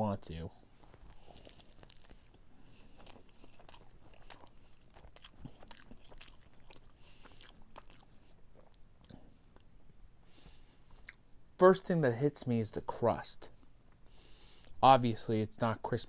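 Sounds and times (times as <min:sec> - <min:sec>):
person chewing food: 0:00.7 - 0:11.4, 0:13.8 - 0:14.8
mouth clicks and smacks: 0:10.9 - 0:11.4.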